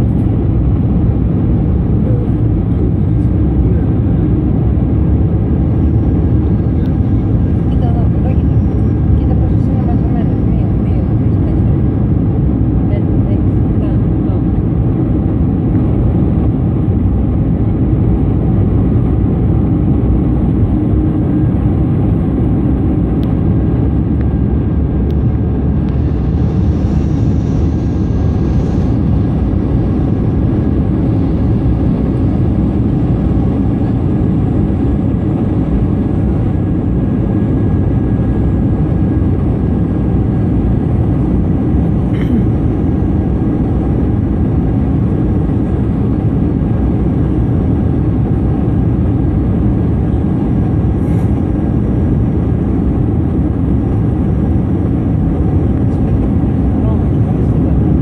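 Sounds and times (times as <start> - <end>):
airflow rushing over fuselage: 0.0 - 58.0
faint steady whine: 0.0 - 58.0
jet engines droning: 0.0 - 58.0.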